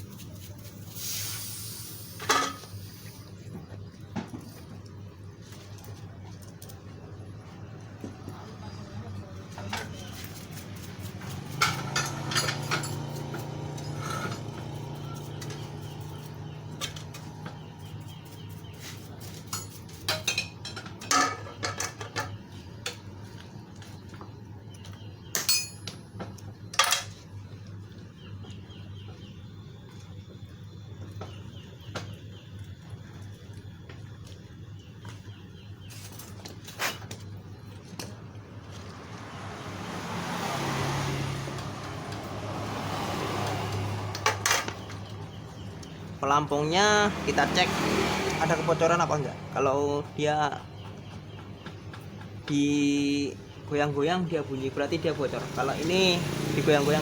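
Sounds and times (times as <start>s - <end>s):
metal parts clicking and clinking: 25.4s - 26.0s.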